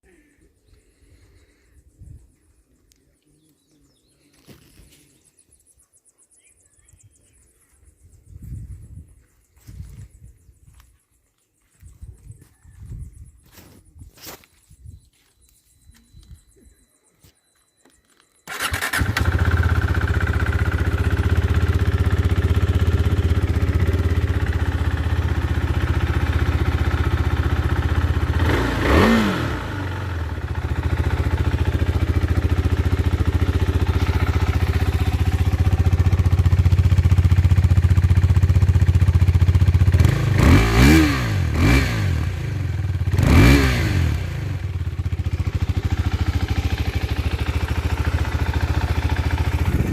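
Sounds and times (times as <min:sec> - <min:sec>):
engine throttle blips: 0:18.4 - 0:49.9
motorcycle engine idling: 0:18.5 - 0:49.9.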